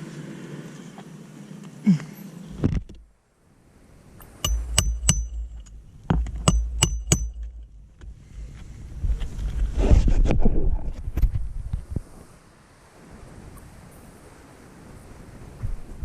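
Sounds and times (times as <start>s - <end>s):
sharp ringing clinks: 4.4s - 7.7s
low uneven rumble: 4.7s - 11.8s.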